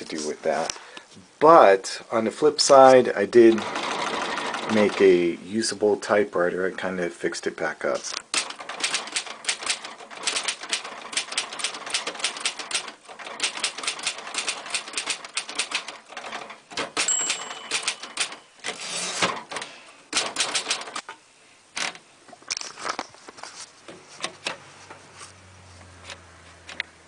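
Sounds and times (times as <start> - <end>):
typewriter carriage return: 8.3 - 21.0
typewriter key strikes: 16.8 - 18.4
typewriter bell ding: 17.0 - 18.6.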